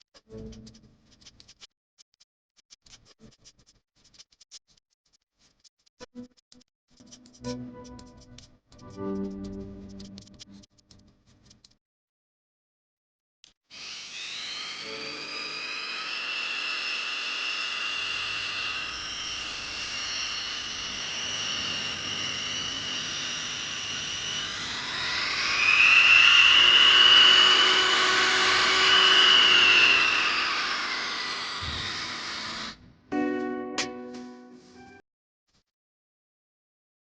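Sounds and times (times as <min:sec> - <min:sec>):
electric grinder whining: 0:13.7 - 0:32.8.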